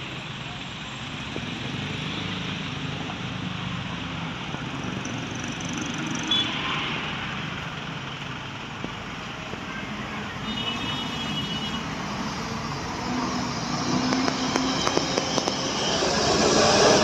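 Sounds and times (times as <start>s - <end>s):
road traffic passing: 0.0s - 17.0s.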